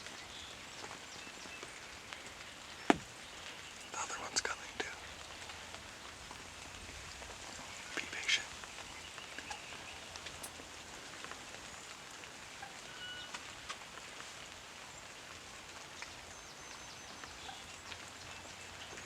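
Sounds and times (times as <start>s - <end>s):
steady outdoor hiss: 0.0s - 19.0s
light ticks: 0.8s - 14.6s.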